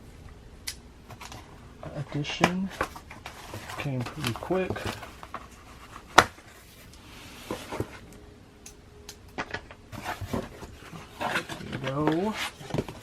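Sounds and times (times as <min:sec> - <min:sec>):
packaging clicks and rustling: 0:02.4 - 0:08.2, 0:09.3 - 0:13.0.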